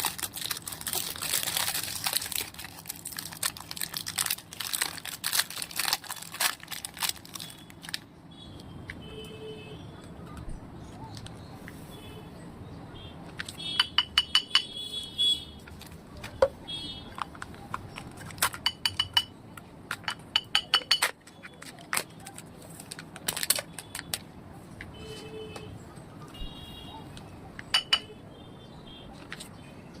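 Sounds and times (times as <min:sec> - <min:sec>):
plastic packaging clicking: 0:00.0 - 0:08.1, 0:20.8 - 0:24.3.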